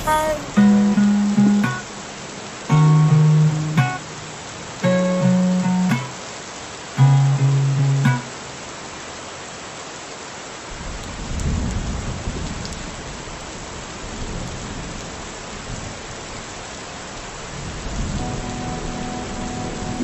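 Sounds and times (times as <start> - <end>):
steady rain: 0.0 - 20.0.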